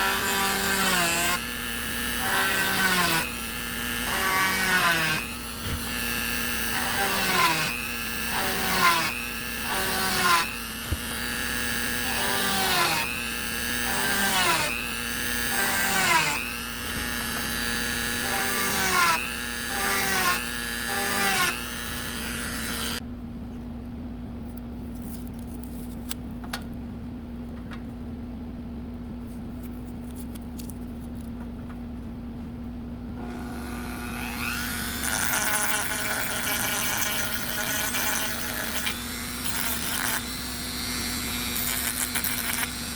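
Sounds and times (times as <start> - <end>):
rotary tool sanding wood: 0.0 - 23.0, 33.2 - 42.9.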